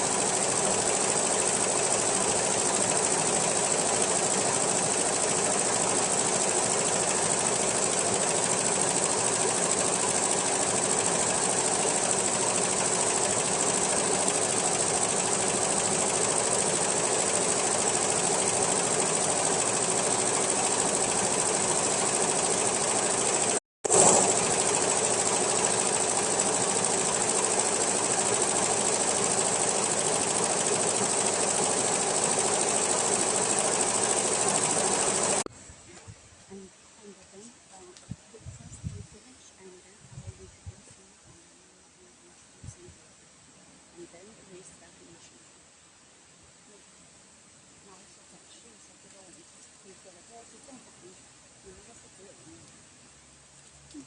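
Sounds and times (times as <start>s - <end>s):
embroidery machine stitching: 0.0s - 35.5s.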